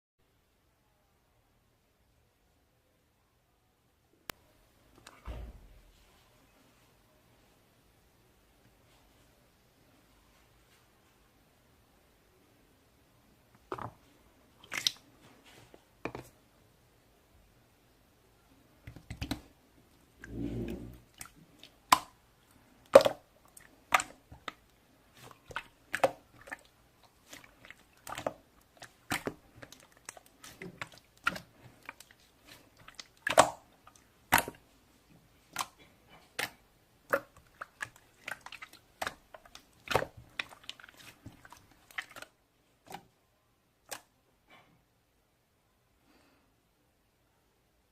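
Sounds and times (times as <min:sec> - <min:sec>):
slime squishing with sticky pops: 0:18.8 - 0:19.6, 0:20.2 - 0:22.2, 0:22.8 - 0:34.7, 0:35.4 - 0:42.3.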